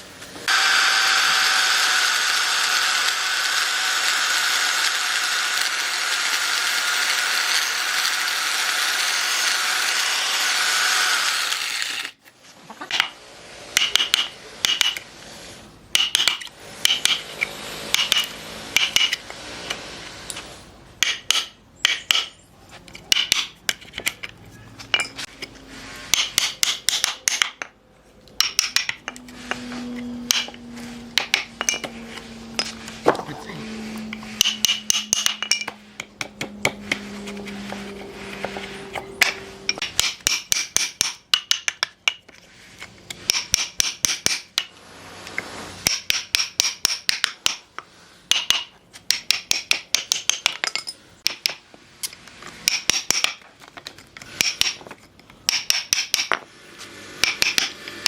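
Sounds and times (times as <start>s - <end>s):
power tool whining: 0.3s - 12.2s, 29.0s - 39.8s.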